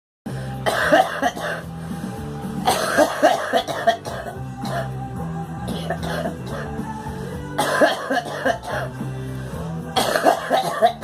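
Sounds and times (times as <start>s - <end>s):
background music with low notes: 0.3s - 11.0s
girl coughing: 0.7s - 1.6s, 2.7s - 4.9s, 7.6s - 8.8s, 10.0s - 11.0s.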